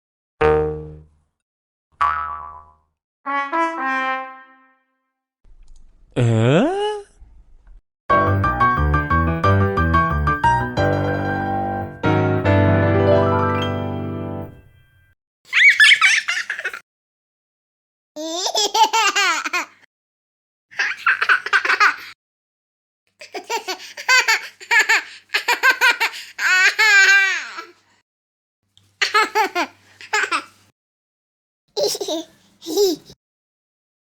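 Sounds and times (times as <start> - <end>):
high-pitched laughter: 15.5 - 16.8.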